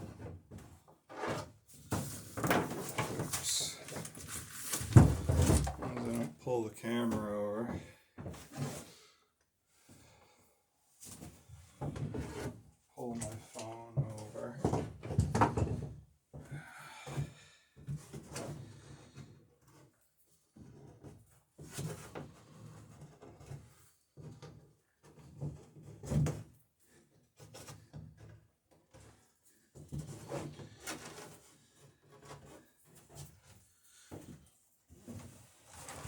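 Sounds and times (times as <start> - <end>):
objects knocking and rustling: 1.8 - 6.3.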